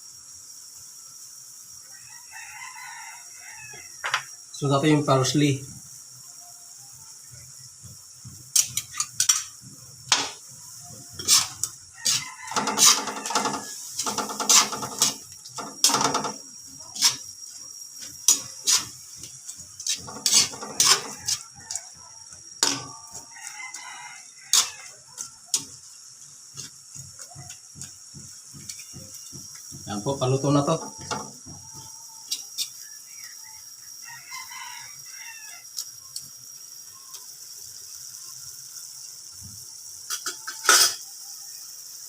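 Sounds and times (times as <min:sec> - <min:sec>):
shrimp sizzling in a pan: 0:00.0 - 0:42.0
rooster crowing: 0:01.8 - 0:04.4, 0:10.7 - 0:25.8, 0:30.0 - 0:35.9.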